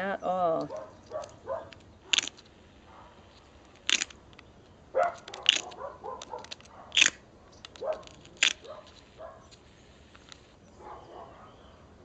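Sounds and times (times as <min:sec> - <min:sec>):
flint striking stone: 0:03.7 - 0:04.4, 0:05.1 - 0:09.6.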